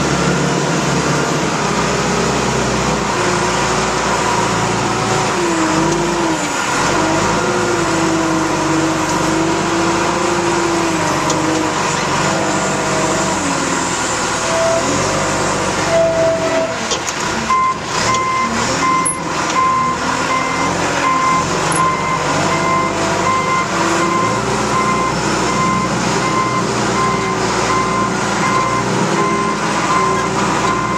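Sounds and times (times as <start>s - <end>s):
diesel engine running under load: 0.0s - 30.9s
reversing alarm beeping: 17.5s - 30.9s.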